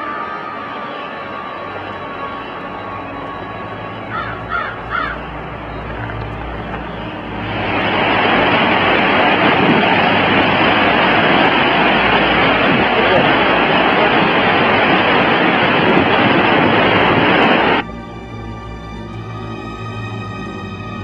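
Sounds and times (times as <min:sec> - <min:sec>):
river water rushing: 0:00.0 - 0:17.8
harsh bird calls: 0:02.4 - 0:08.0.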